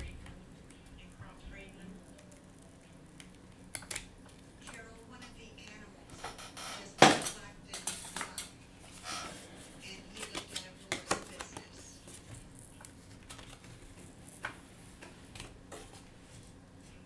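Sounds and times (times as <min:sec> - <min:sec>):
metal tools tapping glass and plastic: 0:06.2 - 0:08.5.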